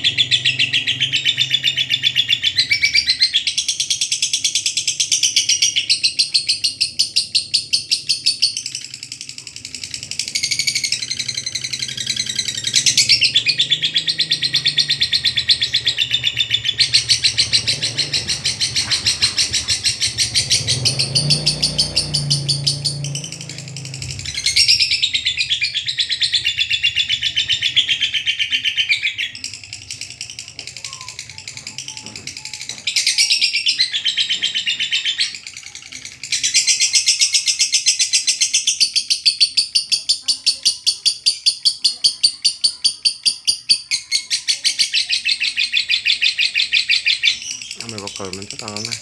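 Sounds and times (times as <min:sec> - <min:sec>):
lovebird high-pitched trill: 0:05.1 - 0:25.9.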